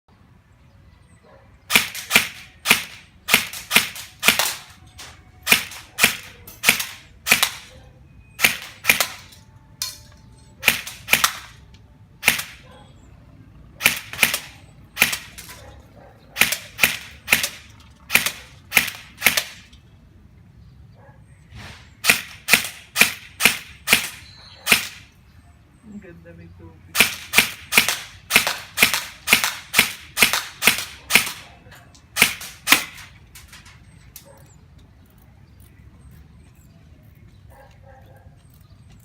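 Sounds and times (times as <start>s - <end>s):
airsoft rifle single shots: 1.7s - 4.7s, 10.6s - 11.6s, 12.2s - 12.6s, 13.8s - 15.6s, 16.4s - 19.7s, 22.0s - 25.1s.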